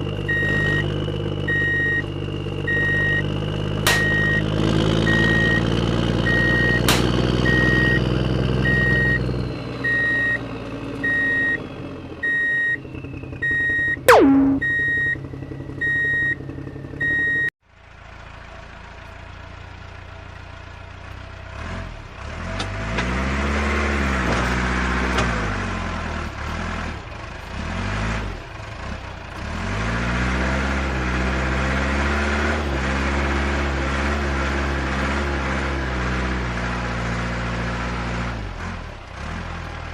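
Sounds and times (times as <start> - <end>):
reversing beeps: 0.3 - 10.4, 11.0 - 11.6, 12.2 - 12.8, 13.4 - 15.2, 15.8 - 16.4, 17.0 - 17.5
sharp falling whistle: 14.1 - 15.0.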